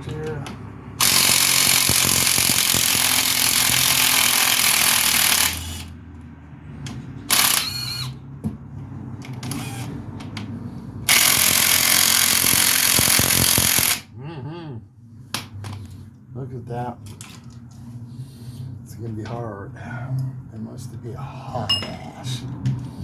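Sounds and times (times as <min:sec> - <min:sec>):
impact wrench hammering: 0:01.0 - 0:05.9, 0:11.1 - 0:14.0.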